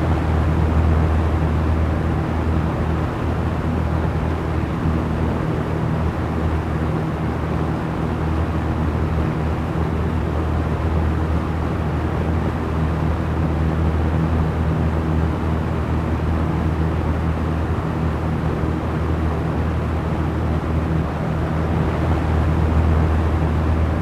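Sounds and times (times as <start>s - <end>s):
electric fan air whoosh: 0.0s - 24.0s
low motor hum: 8.1s - 24.0s.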